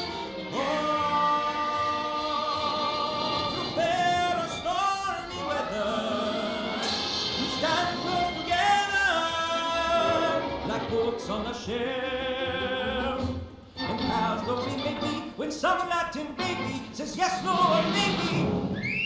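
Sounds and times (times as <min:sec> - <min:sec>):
men singing long notes: 0:00.0 - 0:15.6
latin-style band playing: 0:05.7 - 0:11.1, 0:16.3 - 0:19.0.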